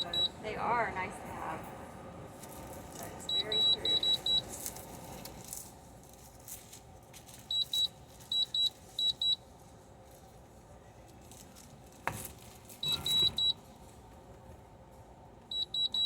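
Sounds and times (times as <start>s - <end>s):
high electronic beeps: 3.3s - 4.4s.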